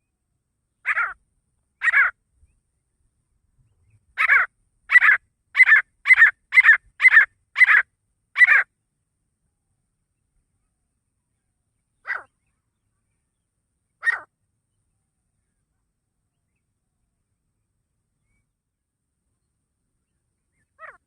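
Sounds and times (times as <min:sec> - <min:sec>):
francolin calling: 0:00.8 - 0:01.2, 0:01.8 - 0:02.2, 0:04.2 - 0:08.7, 0:12.0 - 0:12.6, 0:13.9 - 0:14.3.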